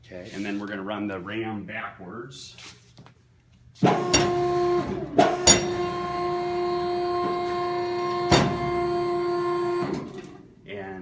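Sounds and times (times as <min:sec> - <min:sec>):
sharp clunks: 0:03.9 - 0:04.5, 0:05.2 - 0:05.8, 0:08.2 - 0:08.7.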